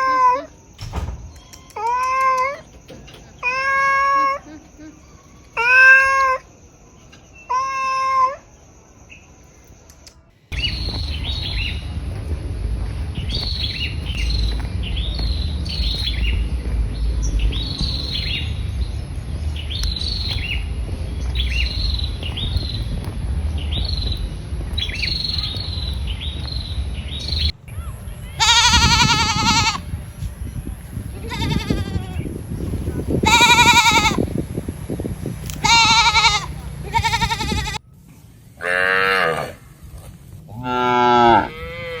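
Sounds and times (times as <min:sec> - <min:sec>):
bird chirping: 0:10.5 - 0:12.1, 0:13.0 - 0:37.8
low rumble: 0:10.5 - 0:37.8
animal bleating: 0:28.4 - 0:29.8, 0:31.2 - 0:32.2, 0:33.2 - 0:34.2, 0:35.6 - 0:37.8.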